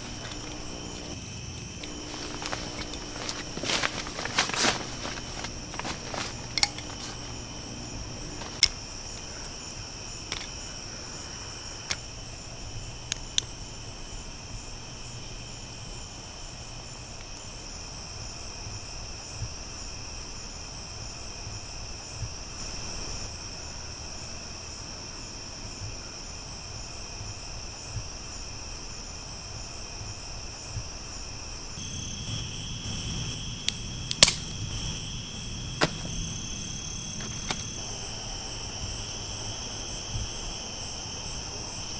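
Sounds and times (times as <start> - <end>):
crickets chirping: 0.0 - 41.9
sharp clicks: 34.1 - 34.6.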